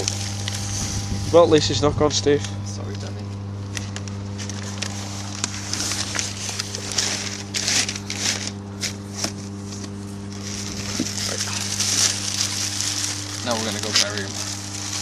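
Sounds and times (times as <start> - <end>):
steady low hum: 0.0 - 15.0
newspaper crinkling and rustling: 3.7 - 15.0.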